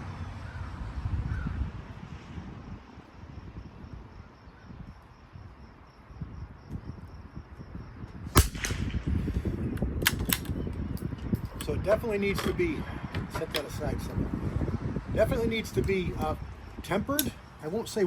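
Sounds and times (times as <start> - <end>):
wind on microphone: 0.0 - 18.0
rifle shot: 8.3 - 10.5.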